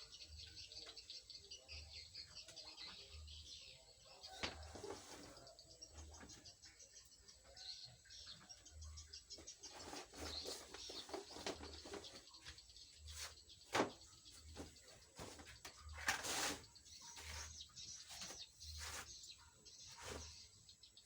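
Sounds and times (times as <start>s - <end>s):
birds chirping: 0.0s - 21.0s.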